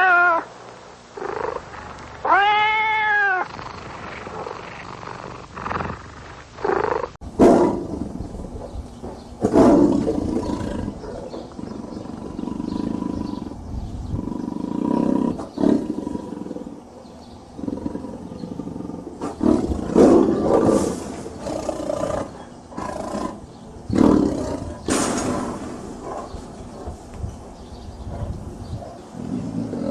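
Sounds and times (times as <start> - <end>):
tiger roaring: 3.4 - 8.6, 9.4 - 16.9, 17.6 - 27.0, 29.2 - 29.9
low rumbling growls: 3.5 - 16.9, 17.5 - 29.9.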